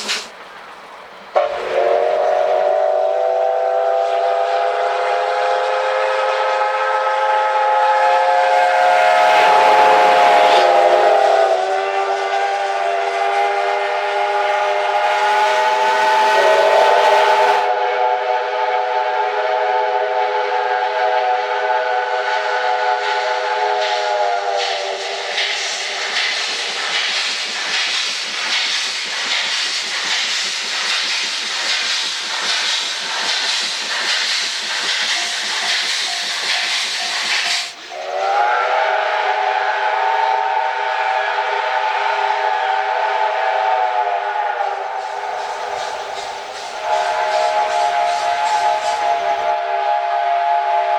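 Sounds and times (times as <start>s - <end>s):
hiss of escaping steam: 0.0s - 17.7s, 21.8s - 49.7s
steam locomotive whistle blast: 1.4s - 28.6s, 31.4s - 50.9s.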